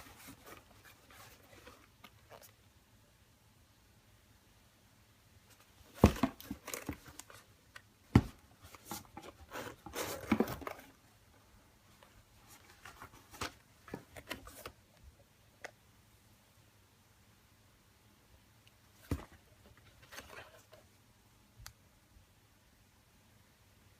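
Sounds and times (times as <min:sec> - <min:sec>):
paper rustling and crinkling: 0:08.6 - 0:11.0.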